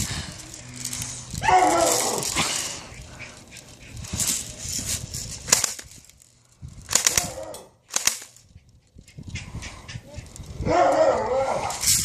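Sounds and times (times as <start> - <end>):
airsoft guns firing: 6.9 - 8.4.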